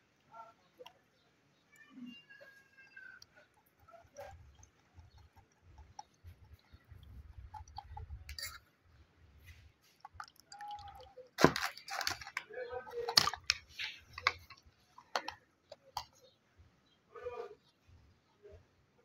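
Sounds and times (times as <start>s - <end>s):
liquid dripping and splashing: 2.8s - 8.7s, 9.3s - 16.2s.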